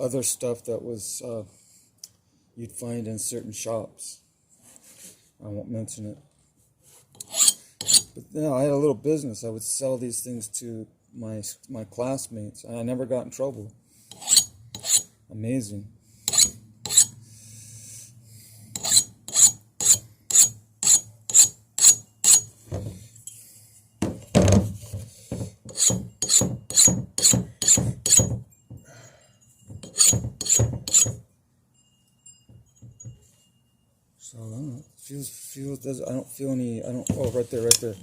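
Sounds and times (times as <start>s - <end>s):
file stroking steel blade: 7.2s - 8.1s, 14.1s - 15.1s, 16.3s - 17.2s, 18.7s - 22.5s, 25.7s - 28.3s, 29.8s - 31.2s.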